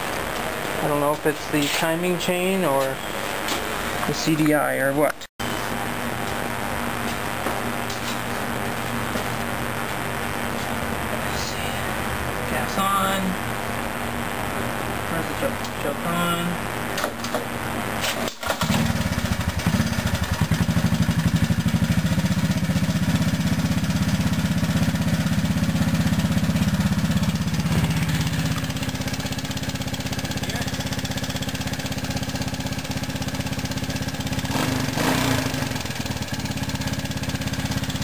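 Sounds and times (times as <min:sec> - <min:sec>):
single-cylinder engine idling: 0:18.6 - 0:38.0.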